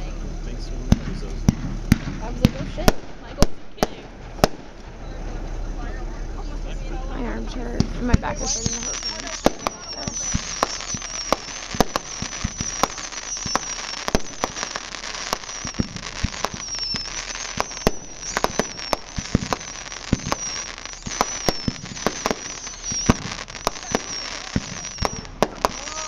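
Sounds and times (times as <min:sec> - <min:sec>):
fireworks crackling: 0:00.0 - 0:26.0
firework shells bursting: 0:00.9 - 0:05.6, 0:07.8 - 0:26.0.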